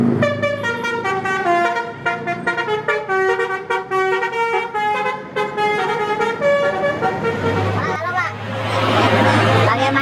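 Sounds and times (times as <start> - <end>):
musical bus horn melody: 0.0 - 7.9.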